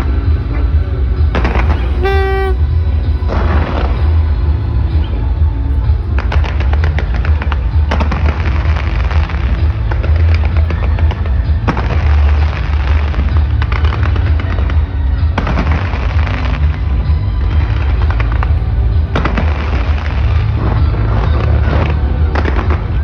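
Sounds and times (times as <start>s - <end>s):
low rumble of firework bursts: 0.0s - 23.0s
fireworks crackling: 5.2s - 23.0s.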